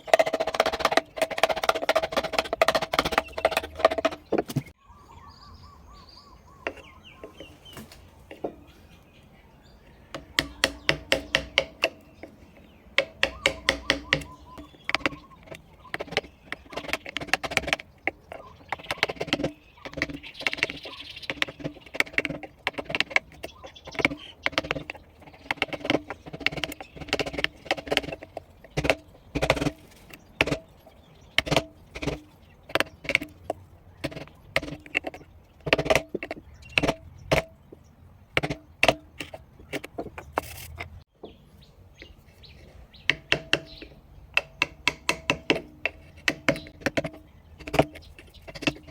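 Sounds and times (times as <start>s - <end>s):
mallet tapping chisel through wood: 10.1s - 30.7s, 43.1s - 48.9s.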